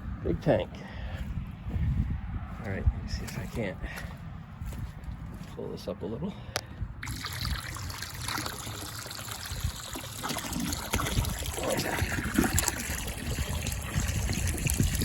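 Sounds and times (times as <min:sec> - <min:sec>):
water trickling into tank: 0:07.0 - 0:15.0.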